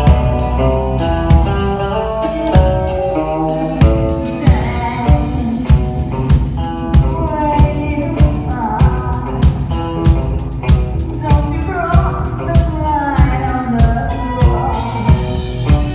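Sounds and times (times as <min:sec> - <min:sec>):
person singing: 0:00.0 - 0:10.0, 0:11.1 - 0:15.9
drum kit beat: 0:00.0 - 0:15.9
guitar chords: 0:00.0 - 0:15.9.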